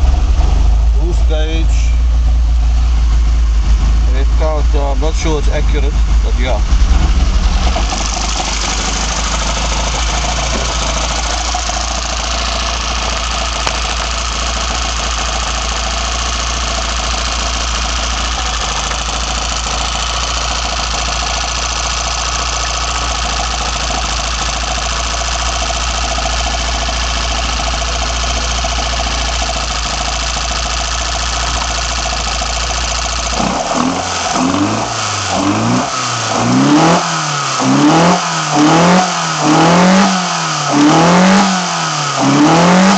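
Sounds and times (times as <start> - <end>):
car engine idling and revving: 0.0 - 42.9.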